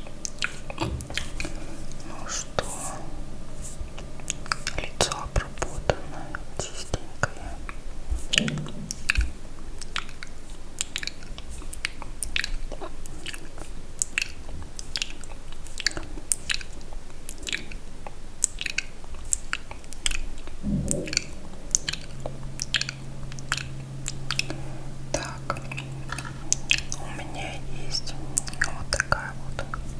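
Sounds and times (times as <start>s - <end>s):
wet lip and tongue clicks: 0.2s - 2.9s, 8.2s - 17.8s, 18.4s - 24.6s, 25.2s - 29.9s.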